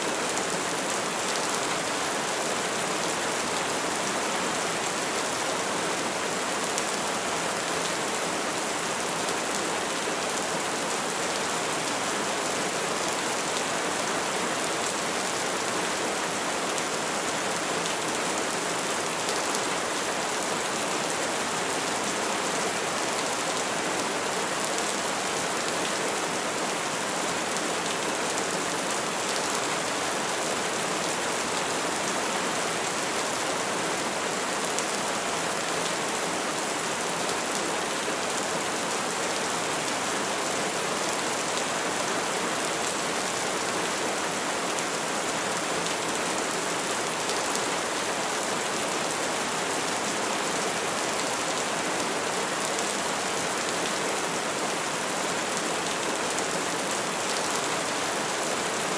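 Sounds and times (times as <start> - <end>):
steady rain falling: 0.0 - 58.9.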